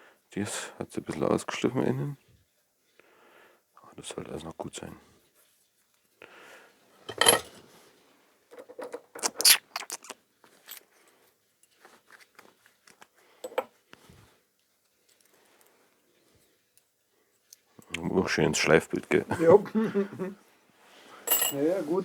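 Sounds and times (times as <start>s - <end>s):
steel parts clinking and knocking: 7.1s - 7.5s, 13.4s - 13.7s, 21.3s - 21.6s.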